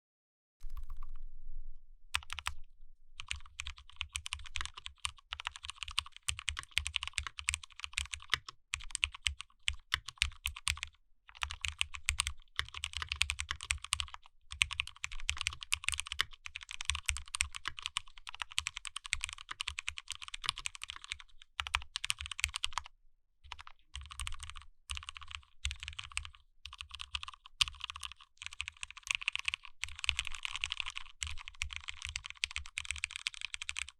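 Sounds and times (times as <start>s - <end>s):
mechanical keyboard typing: 0.6s - 1.2s, 2.2s - 2.6s, 3.2s - 22.9s, 23.5s - 33.9s.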